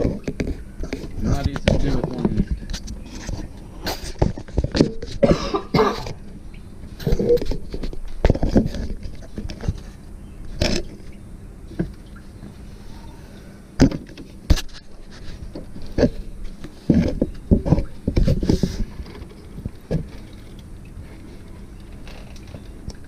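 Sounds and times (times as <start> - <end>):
knocks clicks and scrapes of hand work: 0.0 - 5.2, 7.0 - 9.9, 13.8 - 20.6.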